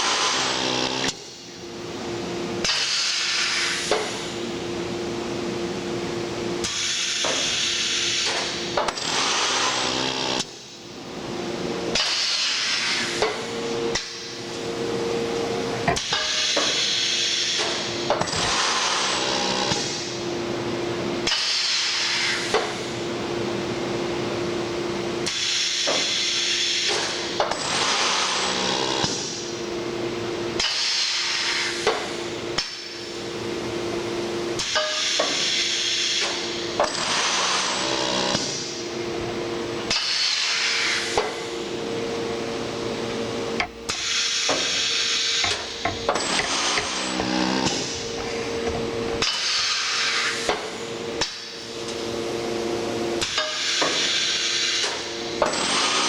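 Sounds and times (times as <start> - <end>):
steady machine hum: 0.0 - 30.6, 31.2 - 56.0
air valves hissing: 15.8 - 20.0, 43.5 - 48.4, 49.2 - 51.7.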